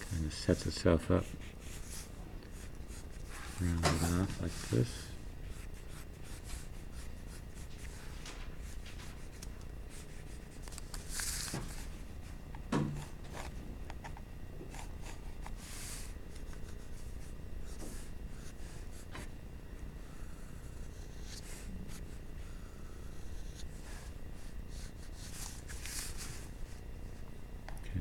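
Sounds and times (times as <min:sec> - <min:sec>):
pencil scratching on paper: 0:00.0 - 0:08.0, 0:08.6 - 0:12.0, 0:20.0 - 0:26.8.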